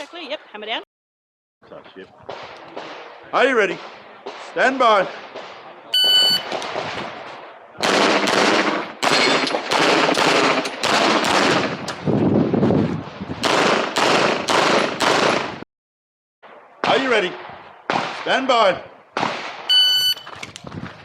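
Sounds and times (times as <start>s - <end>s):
pistol shots in rapid strings: 7.8s - 12.0s, 13.4s - 15.6s.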